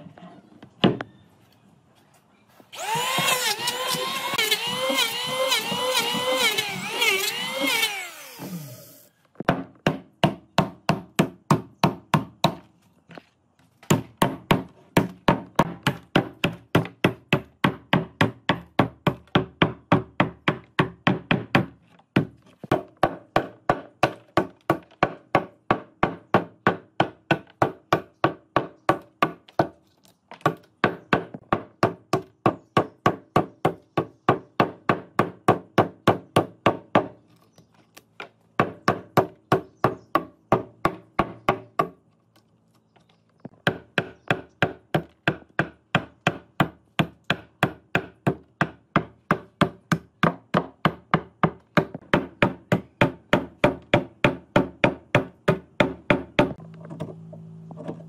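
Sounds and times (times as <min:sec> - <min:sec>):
tool striking wood: 0:02.8 - 0:08.5.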